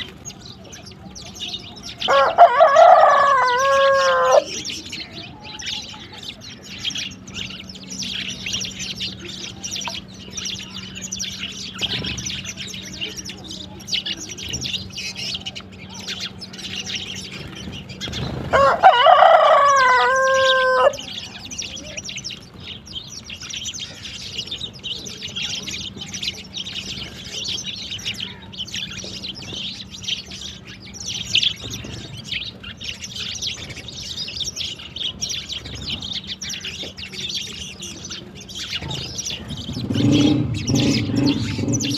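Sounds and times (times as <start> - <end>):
sparrows chirping: 0.0 - 41.9
rooster crowing: 2.0 - 4.6, 18.5 - 21.1.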